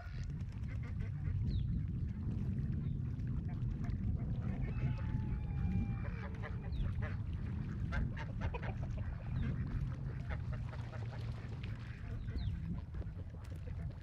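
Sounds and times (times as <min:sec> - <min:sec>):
low rumble: 0:00.1 - 0:14.0
ducks quacking: 0:03.8 - 0:14.0.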